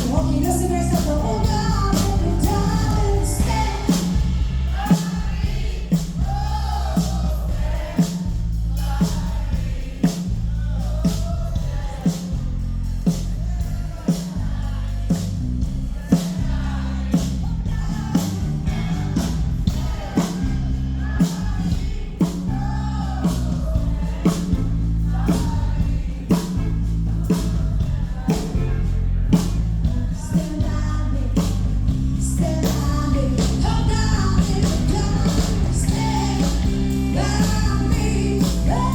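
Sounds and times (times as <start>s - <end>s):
live band playing: 0.0s - 6.2s, 31.6s - 38.9s
lead singer singing: 0.0s - 12.4s, 15.9s - 38.9s
drums keeping a steady beat: 0.0s - 38.9s.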